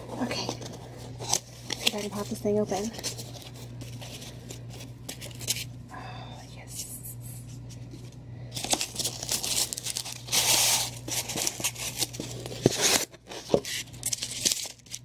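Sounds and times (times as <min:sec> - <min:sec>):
packaging tearing and crinkling: 0:08.5 - 0:15.0.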